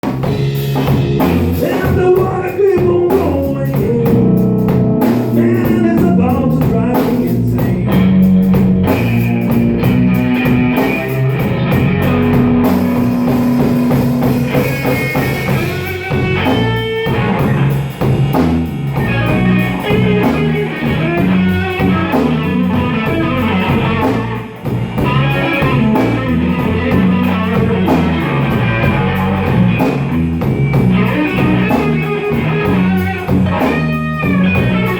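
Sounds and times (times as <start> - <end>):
bass guitar: 0.0 - 34.9
drum kit: 0.0 - 34.9
lead electric guitar: 0.0 - 34.9.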